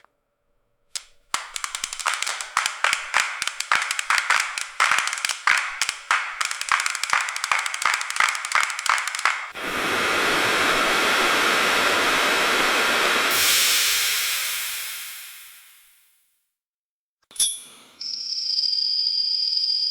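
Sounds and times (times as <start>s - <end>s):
dental chair mechanical clicks: 1.0s - 9.6s.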